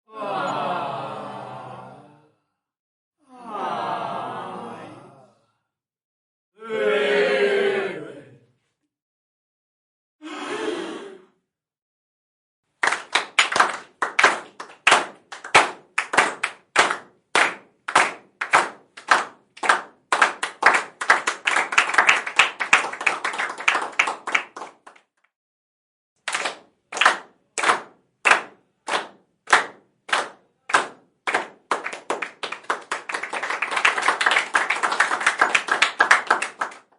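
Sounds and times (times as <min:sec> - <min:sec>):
crowd applause: 0:12.8 - 0:25.0, 0:30.7 - 0:36.9
crowd clapping in unison: 0:12.8 - 0:25.2, 0:26.2 - 0:36.9.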